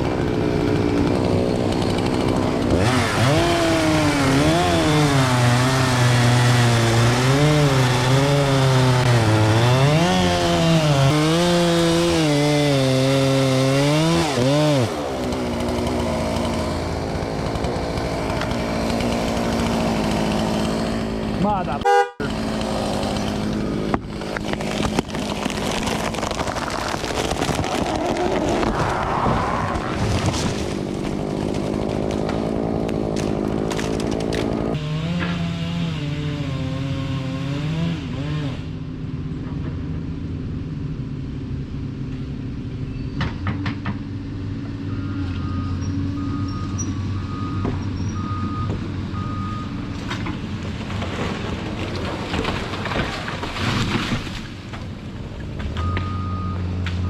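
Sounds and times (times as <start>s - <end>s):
machinery engine running hard: 0.0s - 25.4s.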